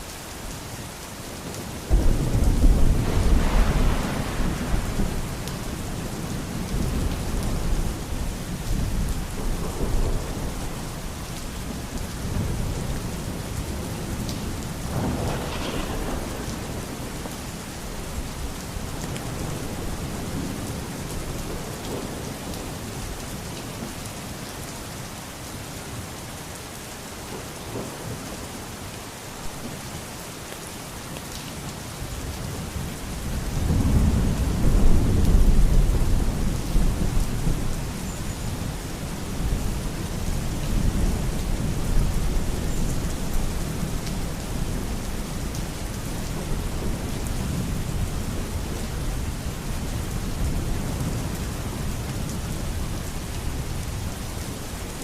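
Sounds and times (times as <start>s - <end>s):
steady rain: 0.0s - 55.0s
thunder rumbling: 1.9s - 22.8s, 33.2s - 51.9s.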